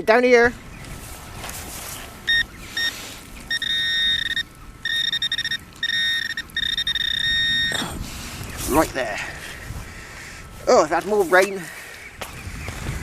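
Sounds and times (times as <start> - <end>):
high-pitched electronic tone: 2.3 - 7.9.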